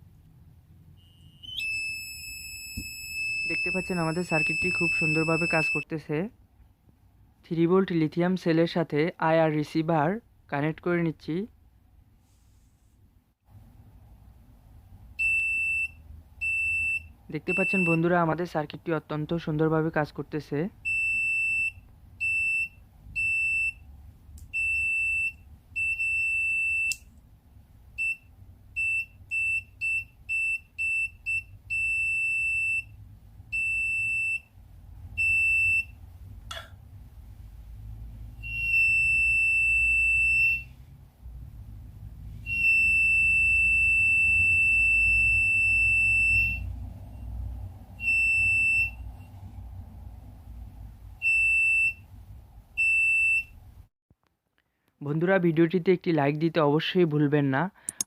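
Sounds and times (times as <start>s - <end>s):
buzzer beeping: 1.0s - 5.8s.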